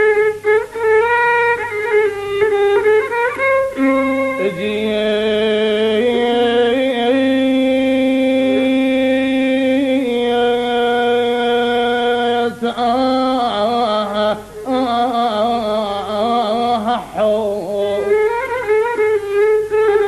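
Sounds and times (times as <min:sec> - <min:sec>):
folk song melody: 0:00.0 - 0:20.0.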